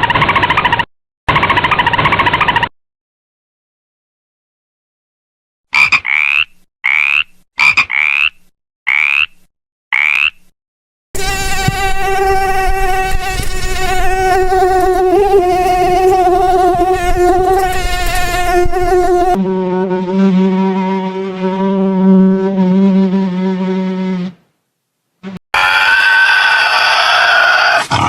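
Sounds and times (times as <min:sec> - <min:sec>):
high-pitched insect buzz: 0:11.2 - 0:24.2
rising animal calls: 0:25.6 - 0:28.0.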